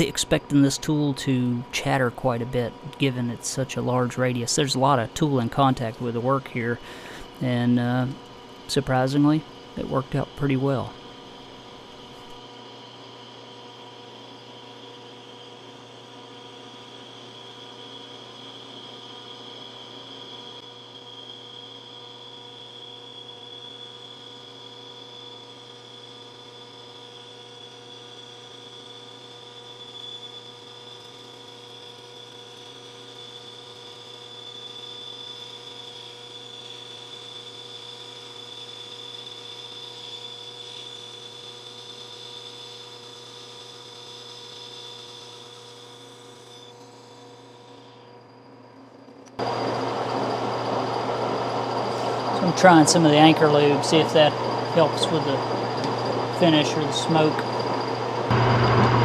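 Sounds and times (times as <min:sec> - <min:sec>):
machine tool cutting metal: 0:49.3 - 0:59.0.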